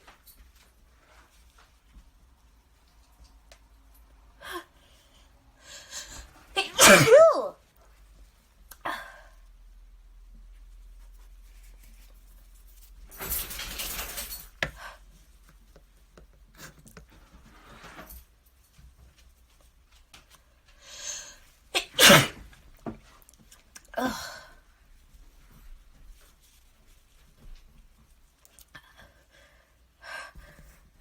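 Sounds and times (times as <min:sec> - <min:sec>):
person sneezing: 0:06.6 - 0:07.6, 0:21.8 - 0:22.4.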